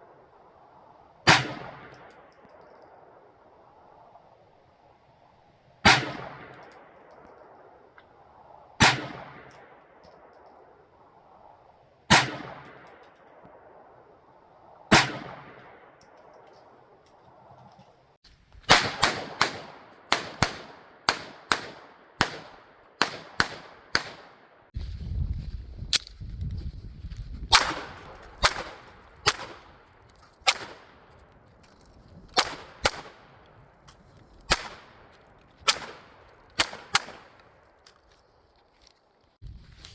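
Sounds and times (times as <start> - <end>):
pistol shots: 1.2 - 2.3, 5.8 - 6.9, 8.8 - 9.6, 12.1 - 12.9, 14.9 - 15.8, 18.7 - 24.5, 27.5 - 29.6, 30.4 - 31.0, 32.3 - 33.3, 34.5 - 37.5.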